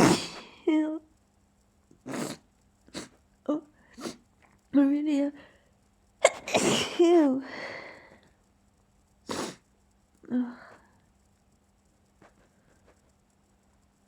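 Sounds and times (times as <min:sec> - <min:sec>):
person sneezing: 0:00.0 - 0:00.6, 0:02.1 - 0:03.2, 0:04.0 - 0:04.2, 0:06.2 - 0:07.1, 0:09.3 - 0:09.6.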